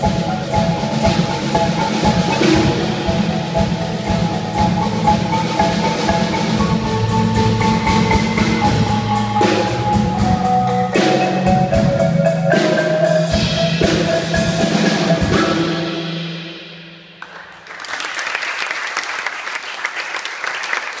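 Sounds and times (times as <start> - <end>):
marimbas playing chords: 0.0 - 16.8
audience applause: 17.2 - 21.0.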